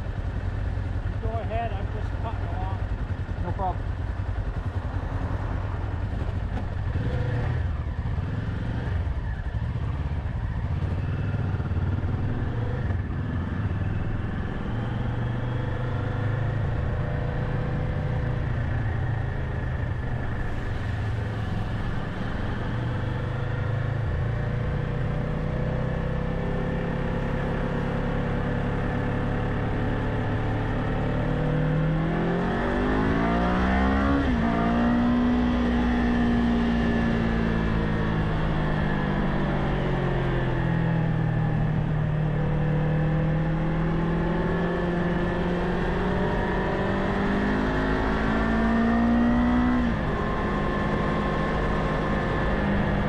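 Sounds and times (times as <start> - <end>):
motorcycle engine running: 0.0 - 33.5.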